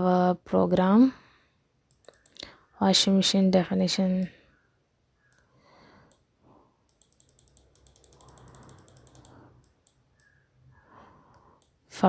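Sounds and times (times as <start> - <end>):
mouse clicks: 1.9 - 2.5, 5.2 - 5.5, 6.9 - 10.4
mouse scroll wheel ticking: 1.9 - 2.5, 6.9 - 10.4.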